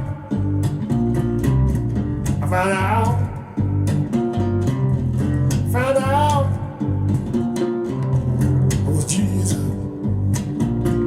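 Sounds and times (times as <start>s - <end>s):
person singing: 0.0s - 0.9s, 2.4s - 4.0s, 5.6s - 7.4s, 8.8s - 10.0s
bass and plucked guitar: 0.0s - 11.0s.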